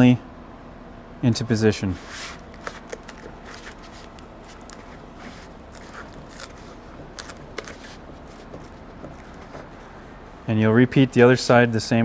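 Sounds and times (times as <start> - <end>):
faint background noise: 0.0 - 12.0
light clicks and rustles: 2.1 - 10.2.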